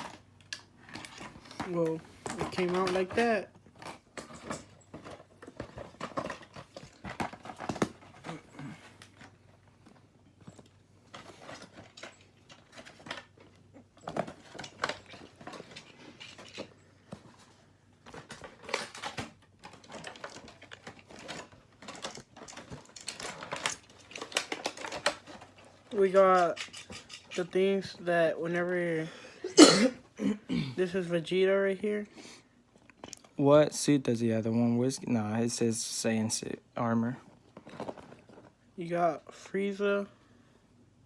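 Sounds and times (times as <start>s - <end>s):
plastic packaging clicks and rustles: 0.0s - 28.8s, 37.0s - 38.6s.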